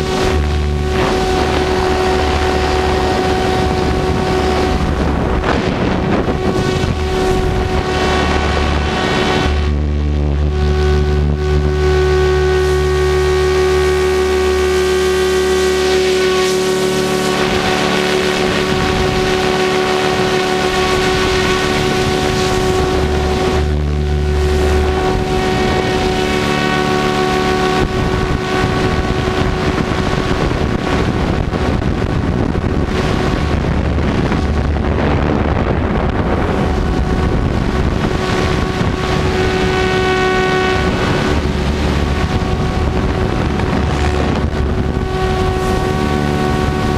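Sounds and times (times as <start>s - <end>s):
helicopter motor whine: 0.0s - 46.9s
rotor wash rush: 0.0s - 46.9s
wind on microphone: 0.0s - 46.9s.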